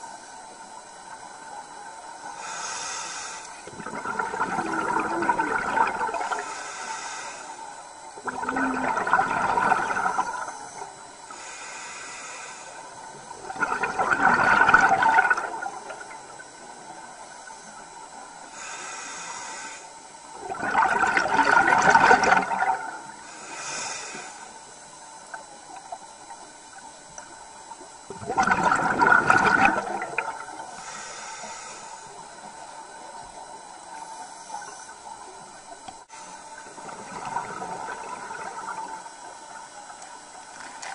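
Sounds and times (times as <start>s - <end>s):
regulator inhalation hiss: 2.2s - 3.7s, 6.1s - 7.9s, 10.3s - 13.4s, 16.1s - 20.2s, 23.0s - 25.2s, 30.5s - 33.1s
exhaled bubbles rushing: 3.6s - 6.4s, 8.2s - 10.6s, 13.4s - 16.3s, 20.4s - 23.2s, 28.0s - 30.7s, 36.6s - 39.4s.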